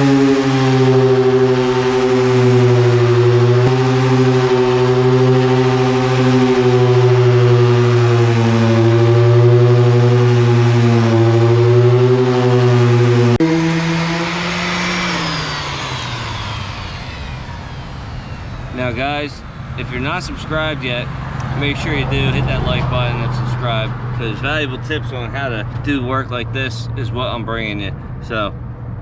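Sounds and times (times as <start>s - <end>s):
electric sander running: 0.0s - 20.7s.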